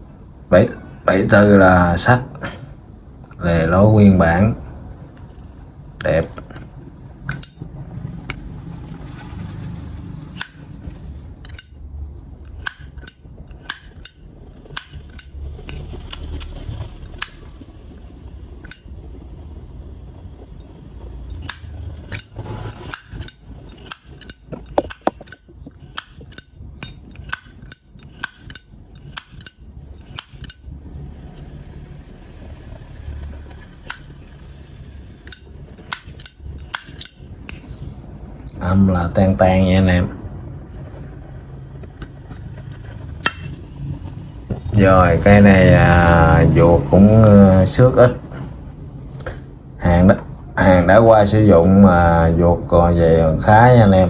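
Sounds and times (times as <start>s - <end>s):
lighter lid clicking open and shut: 12.4s - 17.4s, 21.4s - 30.7s.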